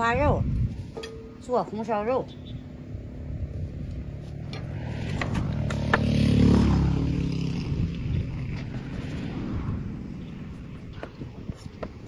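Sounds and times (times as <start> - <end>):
vehicle engine passing by: 3.0 - 11.0.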